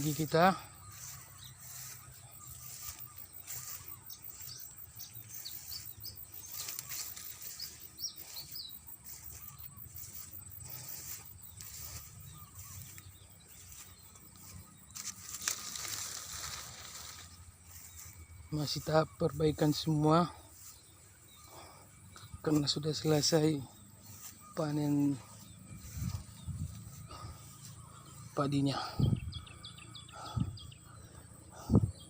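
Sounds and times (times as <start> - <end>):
insect hiss: 0.0 - 18.6
bird chirps: 0.0 - 32.0
footsteps knocks and rustles: 2.0 - 17.3.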